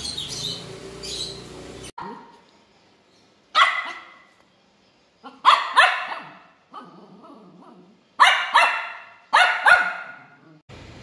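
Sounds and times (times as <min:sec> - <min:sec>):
puppy barking: 0:02.0 - 0:02.4, 0:03.5 - 0:04.3, 0:05.2 - 0:10.5.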